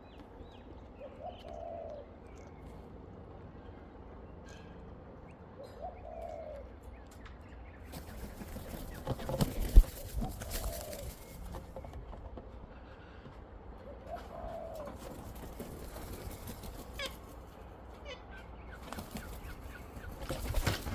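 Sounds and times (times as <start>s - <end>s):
dove cooing: 1.0s - 2.2s, 5.6s - 6.7s, 8.1s - 11.8s, 13.8s - 17.3s
rustling: 7.9s - 12.1s.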